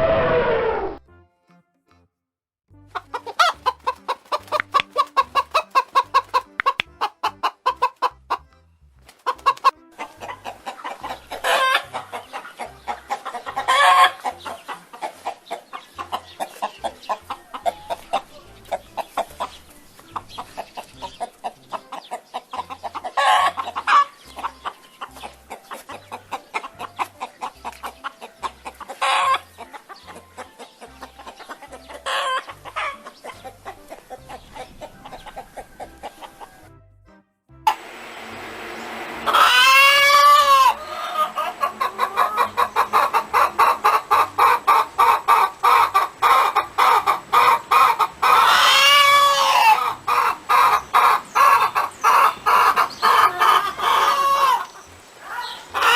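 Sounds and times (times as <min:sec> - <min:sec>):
chickens clucking: 0:02.9 - 0:36.7, 0:37.7 - 0:55.9
loud chicken calls: 0:09.3 - 0:14.6, 0:22.9 - 0:25.2, 0:28.4 - 0:29.7, 0:31.0 - 0:36.7, 0:37.7 - 0:55.9.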